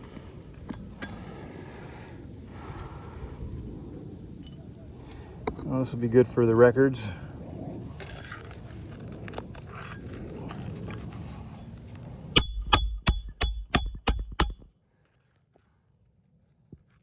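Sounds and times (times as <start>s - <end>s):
sharp metallic strikes ringing: 12.4s - 14.9s.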